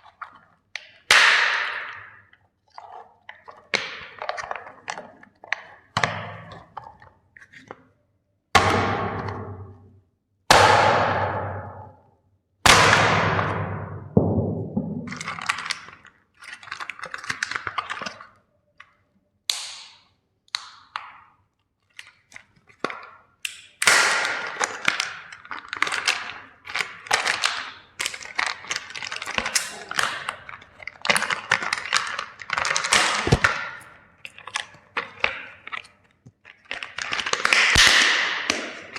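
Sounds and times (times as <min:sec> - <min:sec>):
plastic cracking and crackling: 0:15.1 - 0:19.0, 0:20.6 - 0:38.9.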